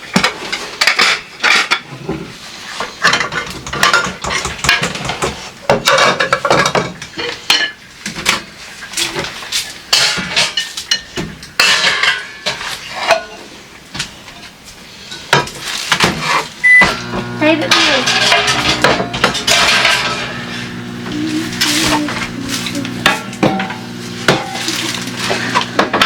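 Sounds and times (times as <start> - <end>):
dishes and cutlery clinking: 3.0 - 13.5, 17.7 - 20.5.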